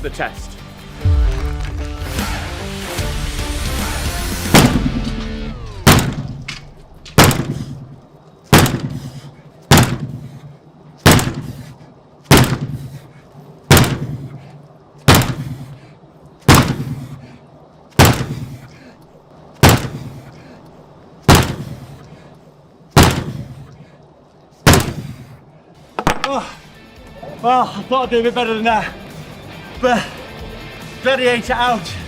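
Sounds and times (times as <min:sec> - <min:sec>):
sledgehammer striking door: 0:04.5 - 0:06.4, 0:07.2 - 0:07.7, 0:08.6 - 0:09.0, 0:09.7 - 0:10.2, 0:11.1 - 0:11.5, 0:12.3 - 0:12.7, 0:13.7 - 0:14.1, 0:15.1 - 0:15.4, 0:16.5 - 0:16.9, 0:18.0 - 0:18.3, 0:19.6 - 0:20.0, 0:21.3 - 0:21.7, 0:23.0 - 0:23.4, 0:24.7 - 0:25.1.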